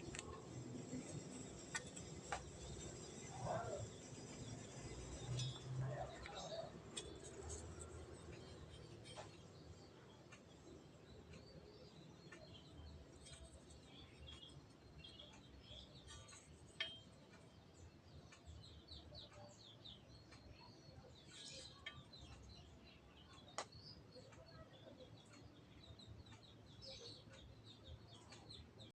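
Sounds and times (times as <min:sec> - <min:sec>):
faint bird chirps: 0:02.6 - 0:28.9.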